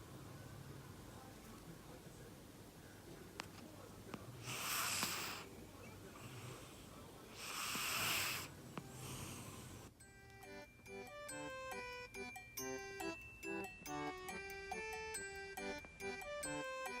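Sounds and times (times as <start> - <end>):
cat snoring: 4.3 - 9.9.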